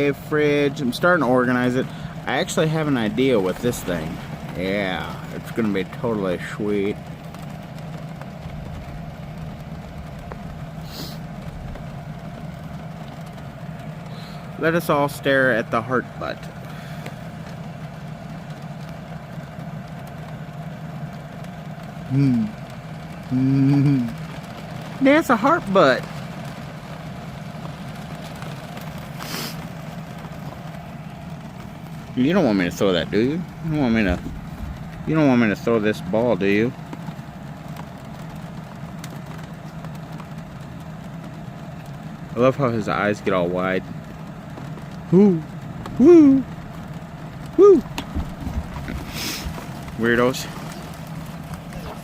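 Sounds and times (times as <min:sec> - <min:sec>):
air conditioner humming: 0:00.0 - 0:52.0
short hiss: 0:10.8 - 0:11.2, 0:29.2 - 0:29.7, 0:49.1 - 0:49.5.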